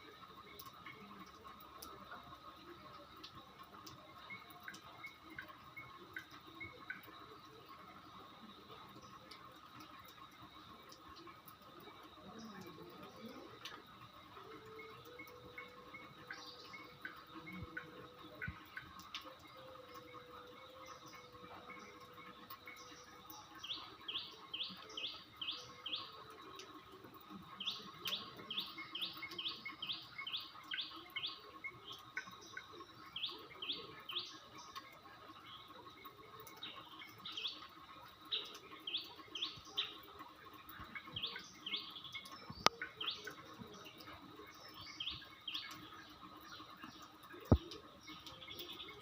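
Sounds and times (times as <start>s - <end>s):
songbird chirping: 0.0s - 49.0s.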